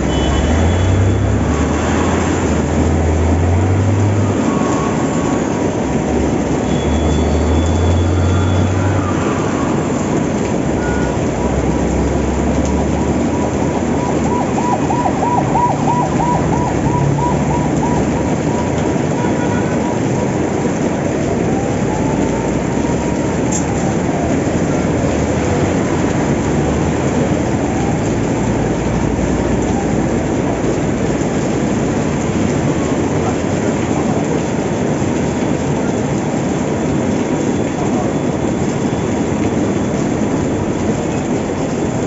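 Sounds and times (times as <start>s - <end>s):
passing traffic rumble: 0.0s - 42.0s
steady rain on street: 0.0s - 42.0s
rising siren tone: 6.6s - 19.3s
siren warbling: 6.7s - 19.4s, 21.4s - 25.1s.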